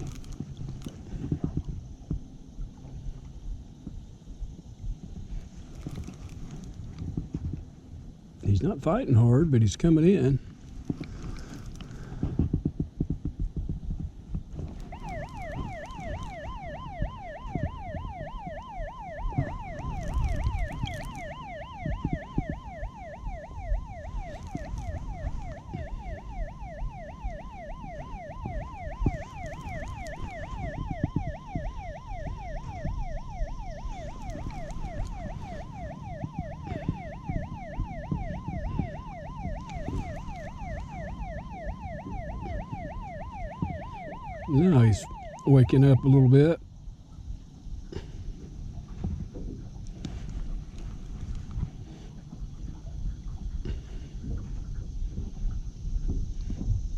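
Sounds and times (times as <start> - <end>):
low rumbling noise: 0.0 - 56.9
siren-like yelping tone: 14.7 - 46.6.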